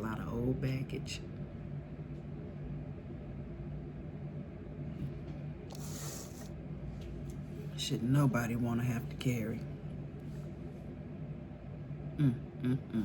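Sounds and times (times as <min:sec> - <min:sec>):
steady low hum: 0:00.0 - 0:13.0
brief hissing rustle: 0:05.7 - 0:06.5.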